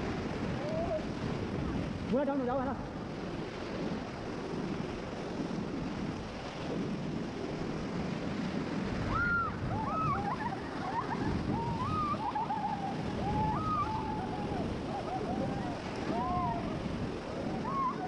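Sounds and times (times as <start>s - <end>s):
wind buffeting microphone: 0.0s - 18.0s
people whooping: 0.6s - 1.1s, 9.0s - 18.0s.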